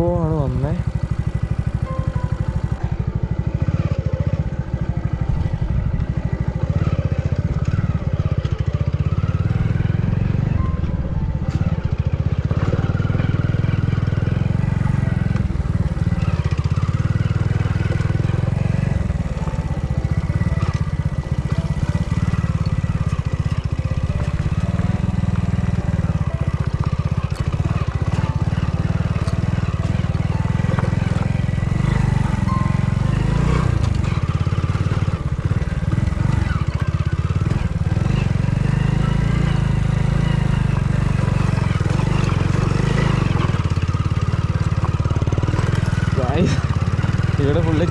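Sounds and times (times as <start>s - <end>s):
motorcycle engine running: 0.0s - 47.9s.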